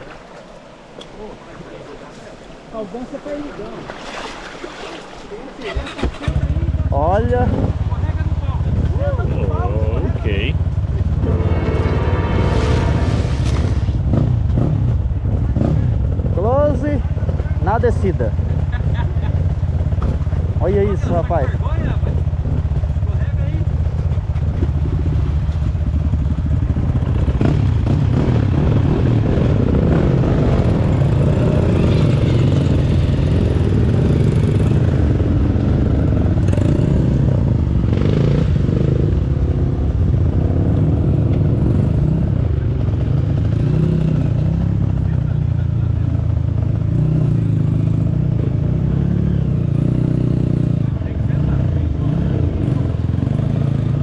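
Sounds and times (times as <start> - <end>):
dirt bike engine revving: 5.7 - 16.8, 26.9 - 42.4.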